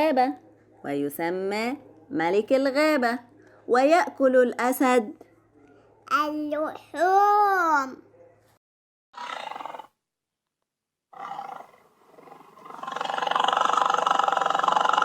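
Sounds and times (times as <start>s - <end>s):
lion roaring: 11.1s - 15.0s.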